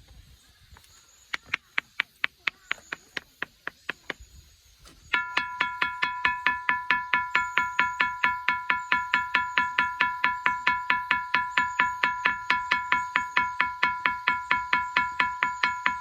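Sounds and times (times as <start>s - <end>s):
ringing stone struck: 5.0s - 16.0s.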